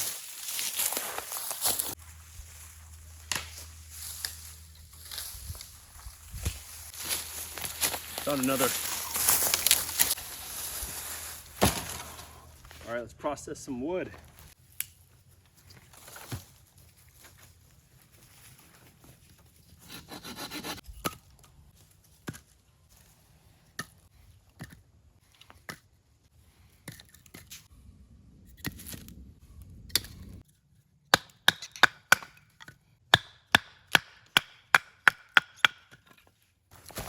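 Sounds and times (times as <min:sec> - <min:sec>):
sharp chopping strikes: 0:03.2 - 0:03.7, 0:11.6 - 0:12.2
wood cracking: 0:07.0 - 0:10.2, 0:11.6 - 0:12.4
saw rasping through wood: 0:19.8 - 0:20.8.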